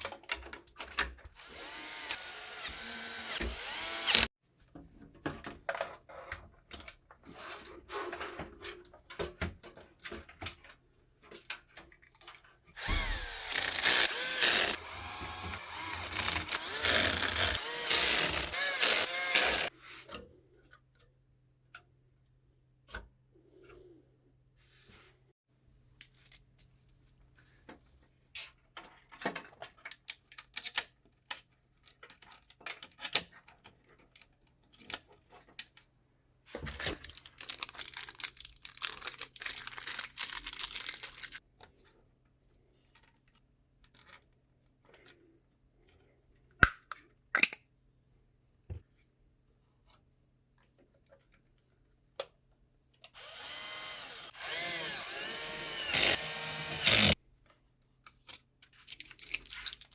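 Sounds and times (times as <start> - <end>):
electric screwdriver motor: 1.4 - 4.3, 12.8 - 19.7, 53.2 - 57.2.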